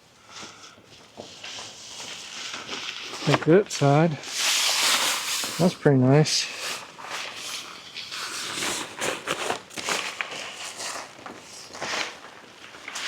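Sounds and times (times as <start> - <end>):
tent fabric rustling: 0.3 - 13.0.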